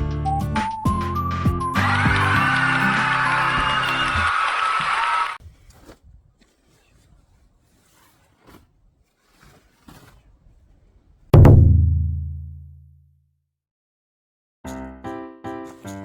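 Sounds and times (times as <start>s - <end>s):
deep boom: 11.4s - 12.5s.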